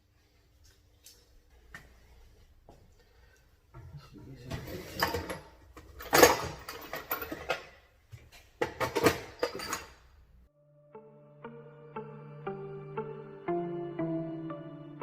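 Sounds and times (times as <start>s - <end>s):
metal tools clanking and rattling: 4.5s - 7.8s, 8.6s - 10.1s
background music: 10.5s - 15.0s.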